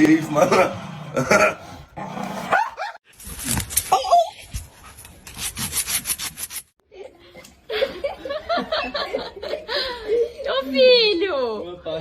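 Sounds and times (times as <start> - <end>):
fast rasping scrape: 5.2 - 6.7.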